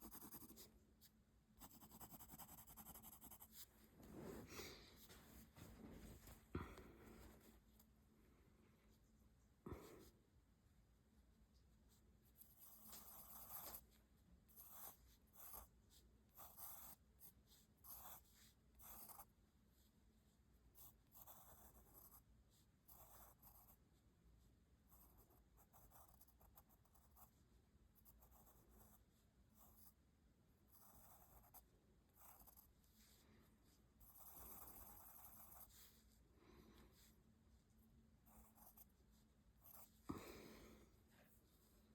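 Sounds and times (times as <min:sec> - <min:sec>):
pencil scratching on paper: 0:00.0 - 0:00.8, 0:01.6 - 0:03.8, 0:12.3 - 0:19.3, 0:20.7 - 0:24.0, 0:24.9 - 0:27.4, 0:28.0 - 0:30.0, 0:30.7 - 0:36.2, 0:38.2 - 0:40.1.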